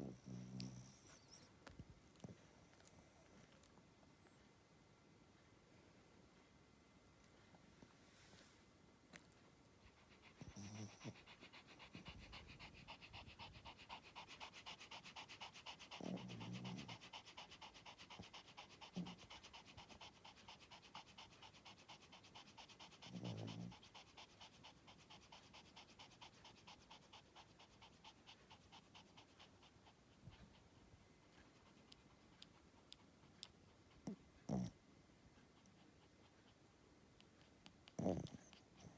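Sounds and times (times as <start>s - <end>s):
dog snoring: 0.0s - 1.4s, 10.4s - 11.2s, 15.5s - 18.3s, 23.0s - 23.8s, 34.0s - 34.8s, 37.9s - 38.9s.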